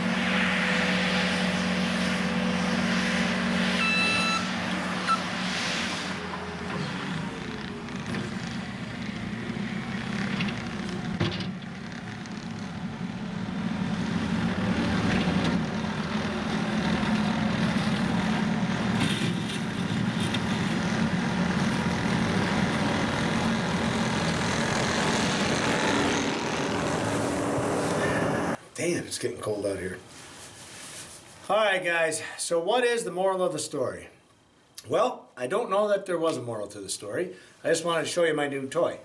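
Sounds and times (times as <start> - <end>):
diesel engine running: 0.0 - 28.6.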